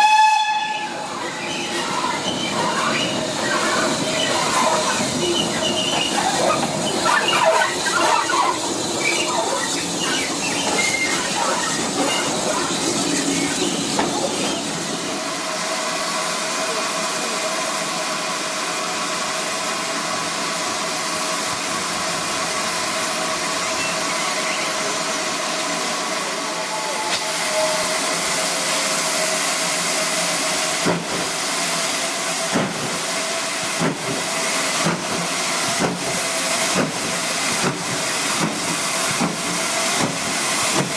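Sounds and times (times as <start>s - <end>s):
steam locomotive hissing: 0.0s - 40.9s
squeaks: 1.3s - 12.7s.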